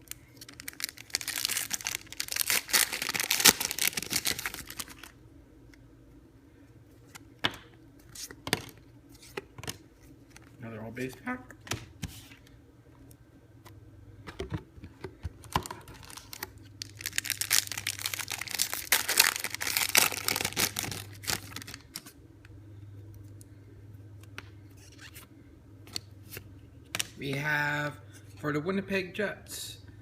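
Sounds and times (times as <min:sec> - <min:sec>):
wrapper tearing and crinkling: 0:00.0 - 0:05.2, 0:15.5 - 0:22.1
low steady hum: 0:00.0 - 0:30.0.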